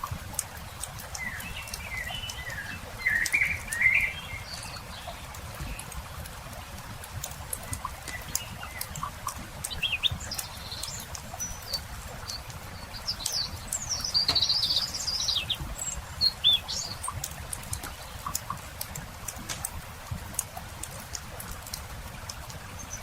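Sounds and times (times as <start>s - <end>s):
small birds chirping: 0.0s - 19.7s, 20.3s - 23.0s
crackling wood campfire: 0.0s - 23.0s
bird warbling song: 0.6s - 6.0s, 7.6s - 18.6s.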